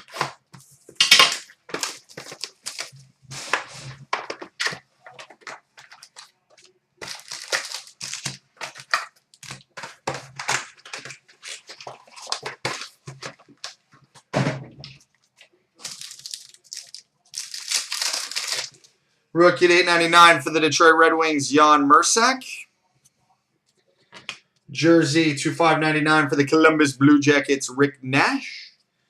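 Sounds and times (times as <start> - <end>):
packaging crinkling and tearing: 0.0 - 13.8, 15.2 - 18.9.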